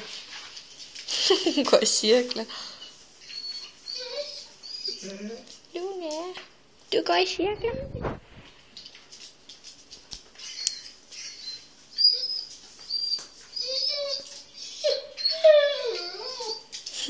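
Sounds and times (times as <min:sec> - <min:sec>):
dog whining: 0:03.2 - 0:05.5, 0:10.4 - 0:17.0.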